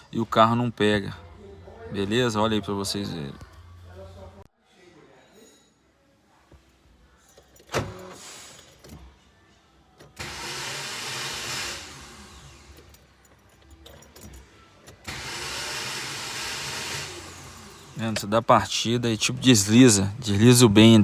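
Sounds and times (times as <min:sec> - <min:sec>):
starter motor whirring: 0:10.0 - 0:13.0, 0:14.9 - 0:18.3.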